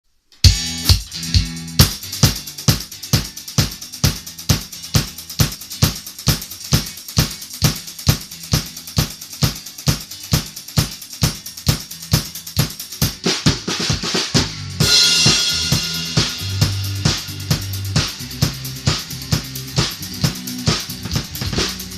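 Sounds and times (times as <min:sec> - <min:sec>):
rock drum beat: 0:00.4 - 0:21.9
cymbal crash: 0:14.8 - 0:18.3.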